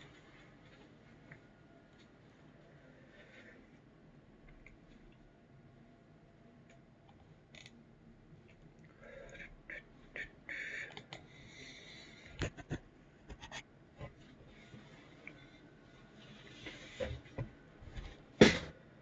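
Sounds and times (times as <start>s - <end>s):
soft rustling and hissing: 14.0s - 18.2s.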